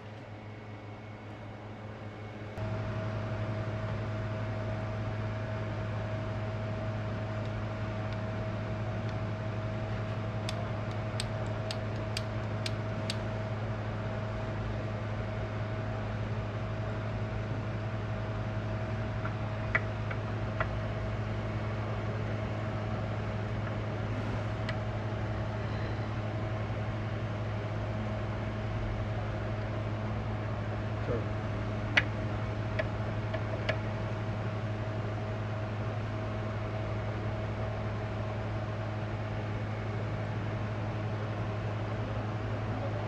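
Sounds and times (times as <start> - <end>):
low machine hum: 0.0 - 43.0.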